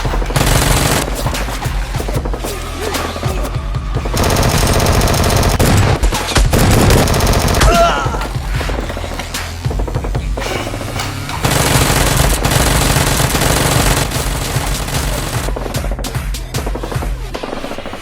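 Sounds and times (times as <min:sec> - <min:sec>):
rapid automatic gunfire: 0:00.0 - 0:01.9, 0:04.1 - 0:07.8, 0:11.4 - 0:16.3
action background music: 0:00.0 - 0:18.0.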